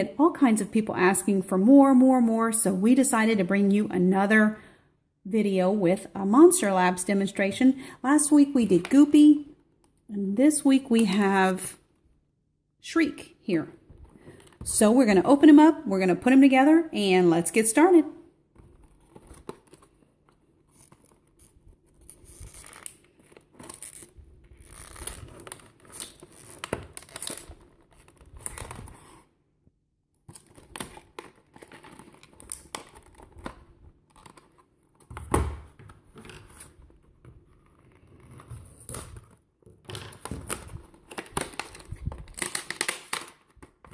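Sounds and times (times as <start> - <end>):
packaging tearing and crinkling: 20.7 - 29.1, 30.3 - 34.6, 38.6 - 43.9.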